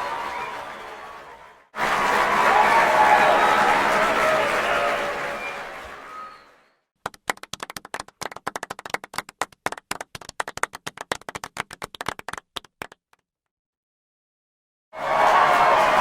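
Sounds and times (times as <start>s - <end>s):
crowd applause: 0.0s - 12.4s, 15.0s - 16.0s
sharp hand claps: 7.0s - 13.2s.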